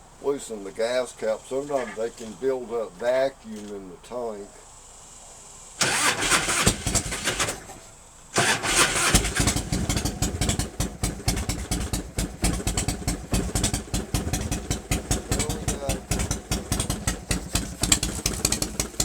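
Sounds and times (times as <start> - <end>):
motorcycle engine running: 5.8 - 19.0
motorcycle starter cranking: 5.8 - 19.0.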